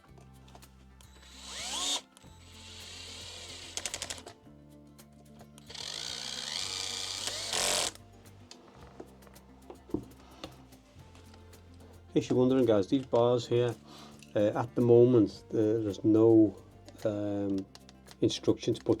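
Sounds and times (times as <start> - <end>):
electric screwdriver whining: 1.1 - 4.3, 5.7 - 8.0
quick run of clicks: 2.8 - 4.4.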